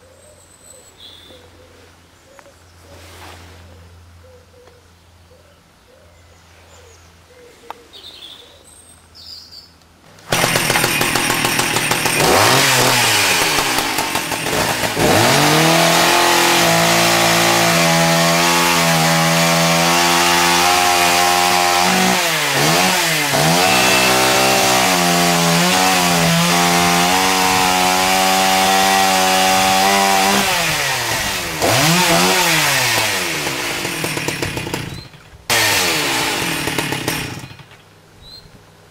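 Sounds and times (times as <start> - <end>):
chainsaw revving: 10.3 - 37.8.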